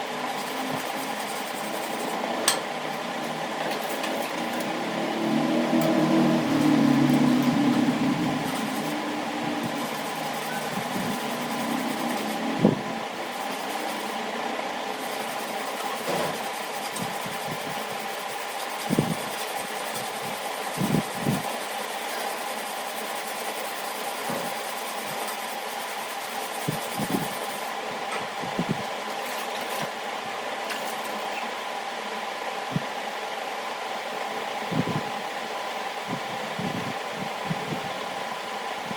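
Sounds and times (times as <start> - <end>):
small electric motor whining: 3.9 - 29.9.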